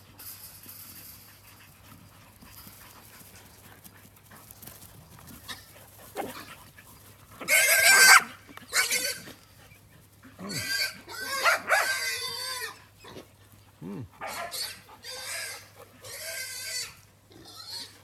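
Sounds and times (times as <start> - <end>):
animals high squealing cries: 7.5 - 9.3, 10.5 - 13.2, 14.3 - 18.0.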